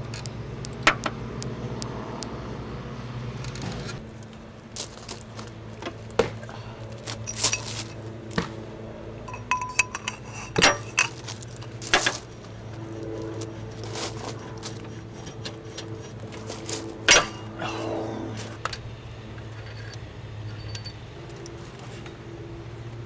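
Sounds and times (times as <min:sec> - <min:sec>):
low hum: 0:00.0 - 0:23.0
metal tools clinking: 0:07.0 - 0:08.1, 0:09.2 - 0:17.5, 0:18.5 - 0:22.0.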